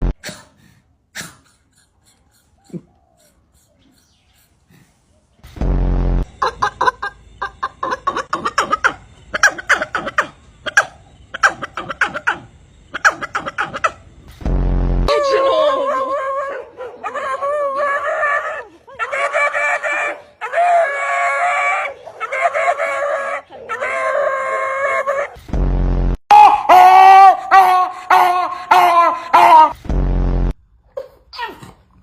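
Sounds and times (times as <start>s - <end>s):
short low buzzes: 5.4s - 6.4s, 14.3s - 15.1s, 25.4s - 26.2s, 29.8s - 30.6s.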